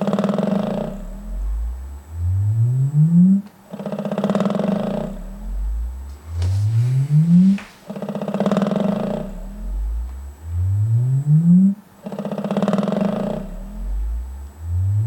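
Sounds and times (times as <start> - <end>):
subwoofer low tone sweeping upward: 0.9 - 3.4, 5.0 - 7.7, 9.0 - 11.8, 13.3 - 15.0.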